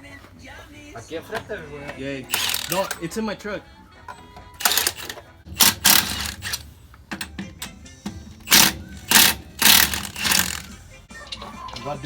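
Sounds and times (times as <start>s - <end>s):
ratchet wrench ratcheting: 2.3s - 3.1s, 4.6s - 7.7s, 8.4s - 12.0s.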